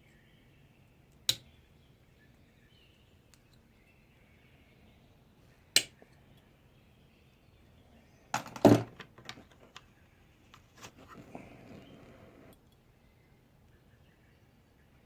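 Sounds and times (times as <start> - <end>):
small tools clattering: 8.4 - 9.8.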